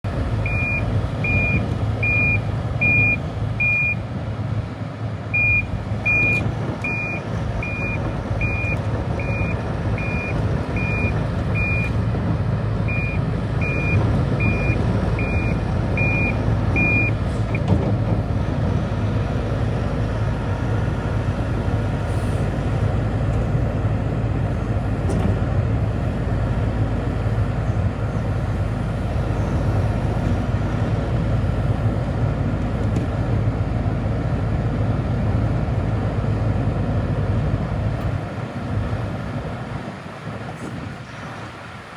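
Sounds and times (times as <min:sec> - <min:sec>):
excavator diesel engine running: 0:00.0 - 0:41.9
travel alarm beeping: 0:00.4 - 0:04.0, 0:05.4 - 0:12.0, 0:12.9 - 0:17.2.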